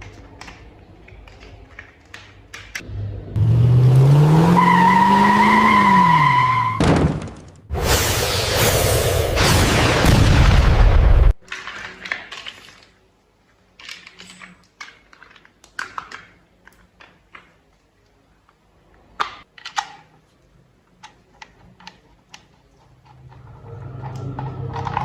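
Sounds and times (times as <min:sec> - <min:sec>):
plastic toy parts clicking: 0:00.0 - 0:02.8, 0:13.7 - 0:18.6, 0:19.2 - 0:20.2, 0:20.8 - 0:23.4
loud rushing noise: 0:07.7 - 0:10.2.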